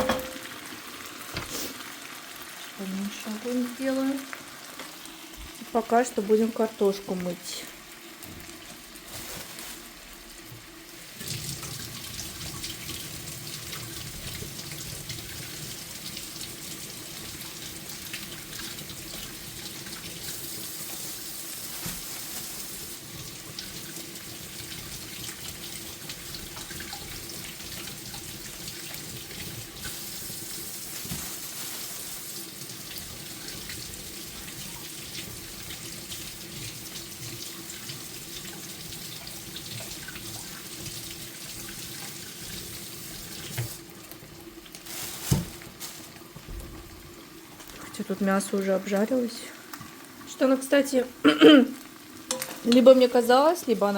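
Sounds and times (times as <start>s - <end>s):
tap running into sink: 0.0s - 0.5s, 1.3s - 1.5s, 43.4s - 43.8s, 45.2s - 45.7s.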